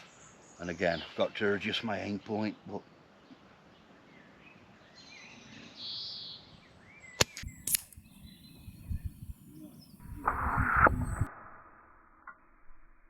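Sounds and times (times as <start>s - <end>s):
air rifle cracks: 7.2s - 10.4s
rushing noise: 8.8s - 12.0s.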